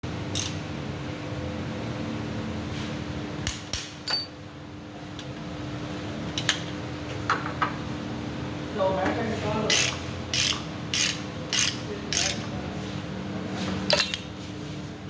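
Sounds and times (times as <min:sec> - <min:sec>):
steady background hum: 0:00.1 - 0:15.0
metal clinks and clicks: 0:13.9 - 0:14.3.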